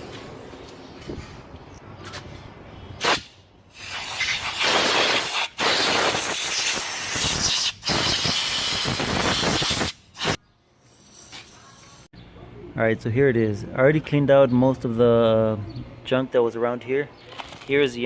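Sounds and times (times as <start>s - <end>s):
compressed air blow gun hissing: 3.0s - 12.1s.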